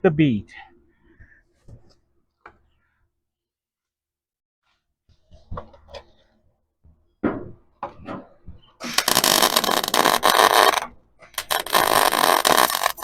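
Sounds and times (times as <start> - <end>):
welding arc crackle: 8.8 - 10.8, 11.4 - 13.0.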